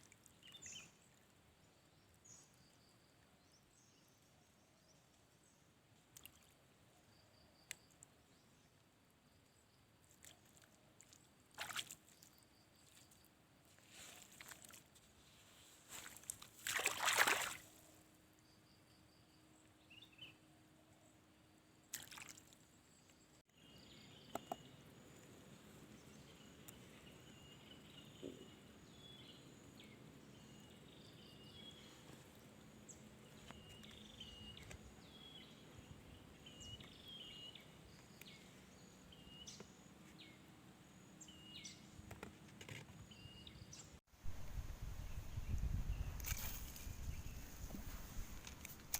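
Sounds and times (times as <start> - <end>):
water sloshing and splashing: 10.2 - 13.2, 14.0 - 15.2, 15.9 - 17.8, 21.9 - 22.7
steady outdoor hiss: 14.9 - 48.9.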